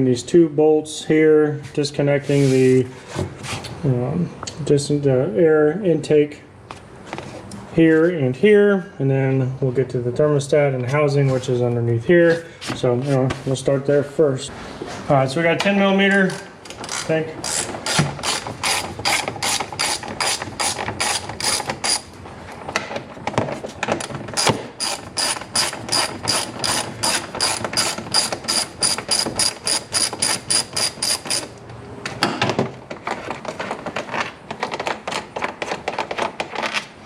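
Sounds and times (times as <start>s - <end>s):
socket ratchet clicking: 24.4s - 31.5s.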